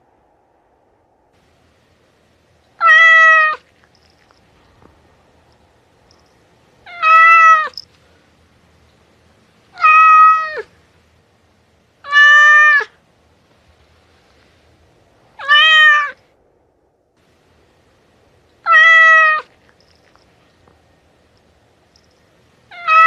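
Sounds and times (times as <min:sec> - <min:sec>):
cat meowing: 0:02.8 - 0:03.7, 0:06.8 - 0:07.8, 0:09.7 - 0:10.7, 0:12.0 - 0:12.9, 0:15.4 - 0:16.2, 0:18.6 - 0:19.6, 0:22.7 - 0:23.0.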